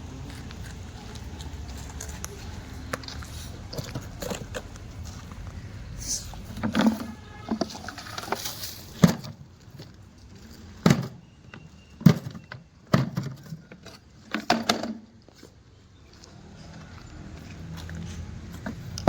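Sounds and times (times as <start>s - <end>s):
hard objects knocking and clicking: 10.8s - 11.3s.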